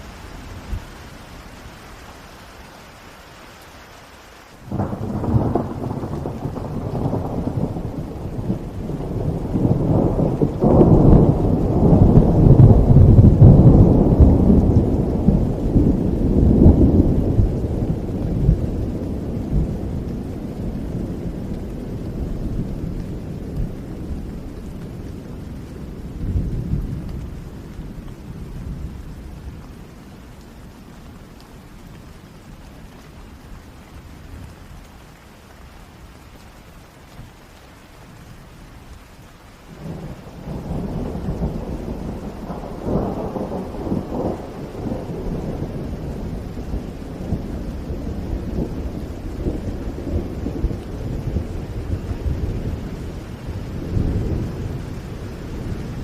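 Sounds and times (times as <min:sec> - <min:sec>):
steady rain: 0:00.0 - 0:56.0
thunder rolling: 0:04.7 - 0:25.5, 0:39.8 - 0:56.0.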